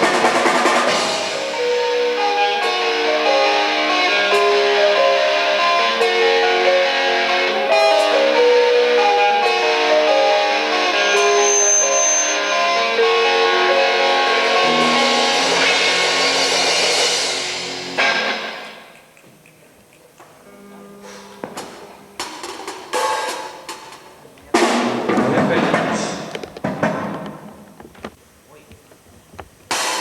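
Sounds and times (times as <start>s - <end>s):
guitar melodic run: 0.0s - 18.8s
band music: 0.0s - 26.5s
low held chord: 0.9s - 18.2s.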